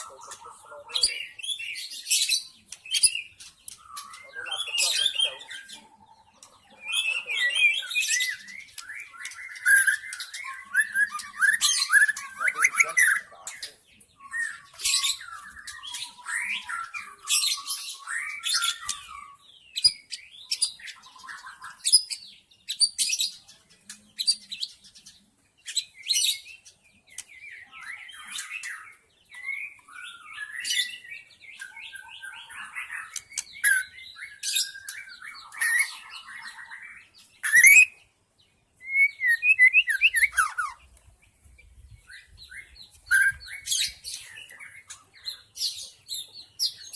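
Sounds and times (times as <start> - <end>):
bird song whistled and chattering: 0.0 - 38.1, 38.8 - 46.9
harsh bird calls: 0.0 - 46.9.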